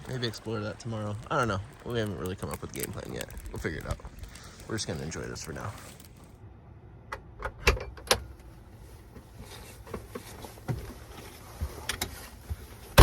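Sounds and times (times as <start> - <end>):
sharp fire pops: 0.0 - 6.1
campfire crackling: 0.0 - 6.4.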